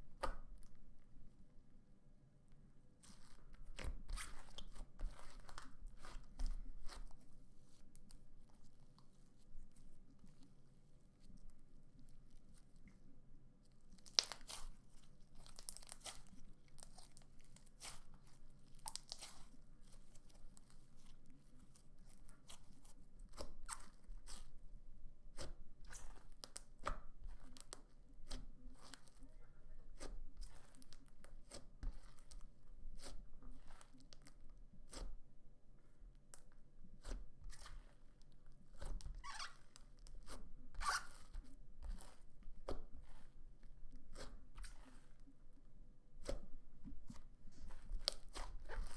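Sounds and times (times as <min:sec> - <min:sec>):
slime squishing and crackling: 0:03.1 - 0:09.1, 0:13.7 - 0:24.7, 0:25.3 - 0:35.2, 0:35.8 - 0:45.3, 0:46.2 - 0:48.9.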